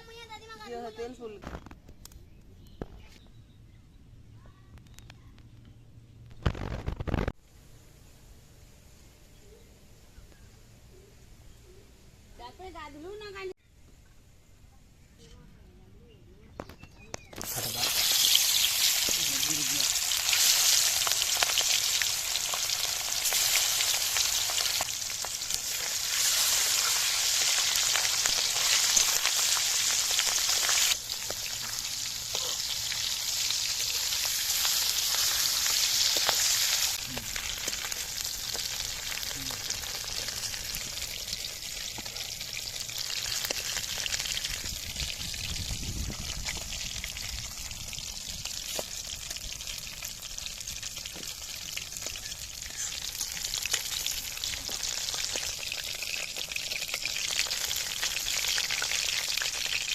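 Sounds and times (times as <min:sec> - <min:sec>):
food sizzling in hot oil: 0:17.4 - 0:59.9.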